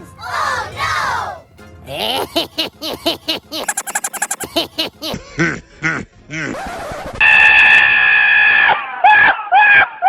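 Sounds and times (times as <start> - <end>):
cartoon voice giggling: 1.9 - 7.2
high-pitched shriek: 7.2 - 8.8.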